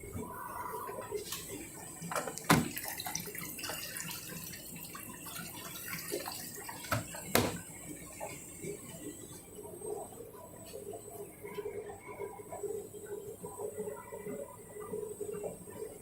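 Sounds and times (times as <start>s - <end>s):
water sloshing in washing machine: 0.0s - 9.6s.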